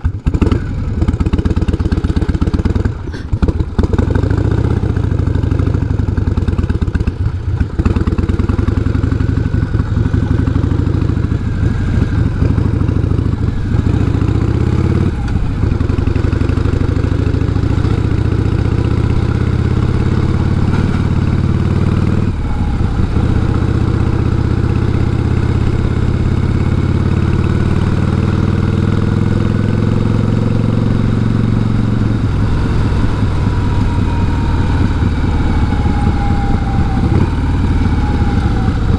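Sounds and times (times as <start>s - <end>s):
motorcycle engine at road speed: 0.0s - 38.9s.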